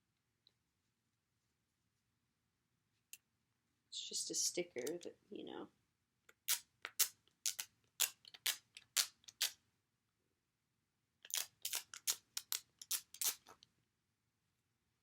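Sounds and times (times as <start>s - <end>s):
plastic pieces clicking: 11.2s - 13.6s.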